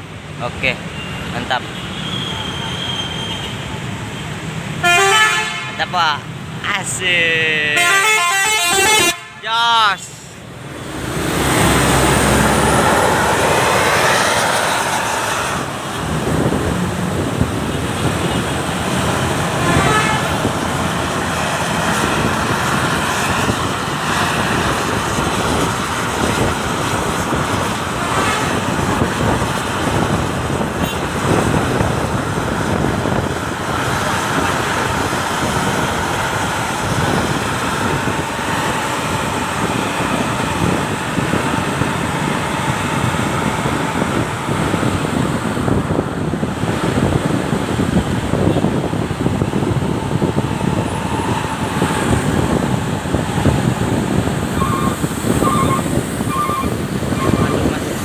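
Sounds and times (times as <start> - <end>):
road traffic noise: 0.0 - 58.0
faint car horn toots: 7.8 - 9.4.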